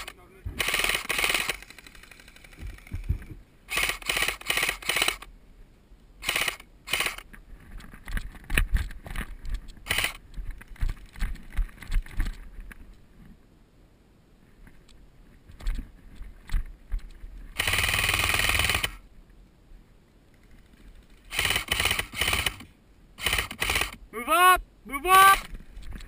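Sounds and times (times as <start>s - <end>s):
airsoft gun firing bursts: 0.0s - 3.0s, 3.7s - 5.3s, 6.2s - 7.2s, 17.6s - 19.0s, 21.3s - 24.0s.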